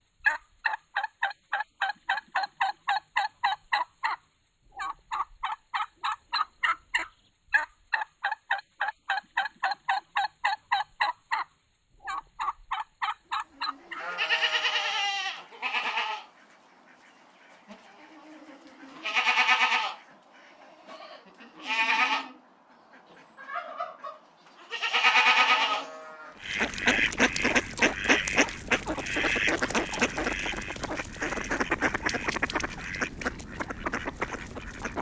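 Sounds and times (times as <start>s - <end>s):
long drawn-out animal calls: 17.7s - 35.0s.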